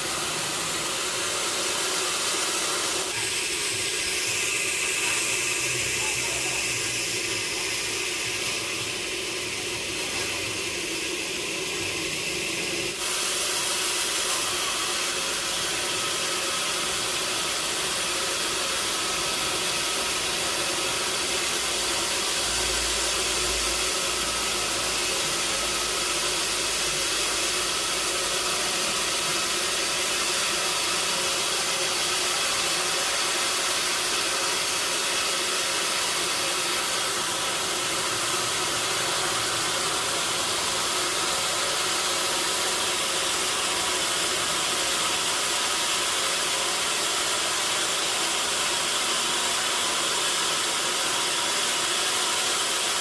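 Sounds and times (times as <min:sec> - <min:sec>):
sawmill machinery hissing: 0:00.0 - 0:53.0.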